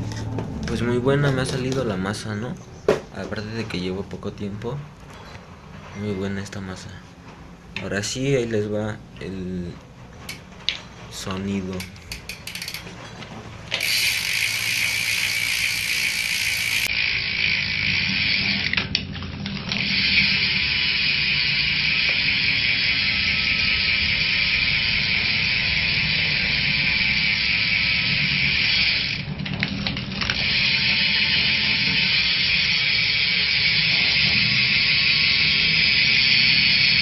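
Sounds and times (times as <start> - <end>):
bicycle hub ratchet clicking: 10.3 - 10.8, 11.7 - 13.0, 13.6 - 37.0.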